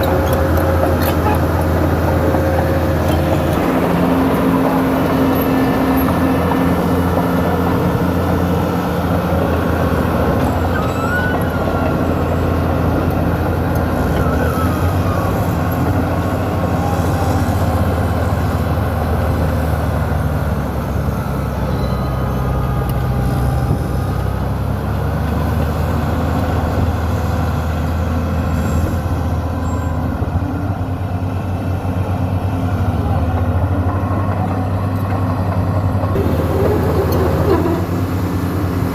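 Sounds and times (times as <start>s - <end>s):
bulldozer diesel engine running: 0.0s - 38.9s
faint high squeaks: 10.4s - 12.6s, 21.6s - 24.1s.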